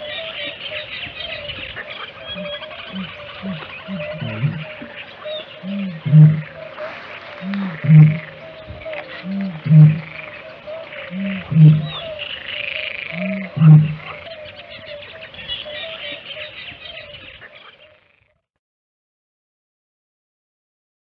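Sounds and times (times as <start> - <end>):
warbling chorus: 2.3 - 5.0, 5.6 - 12.2, 13.1 - 14.2
bittern booming: 5.7 - 10.2.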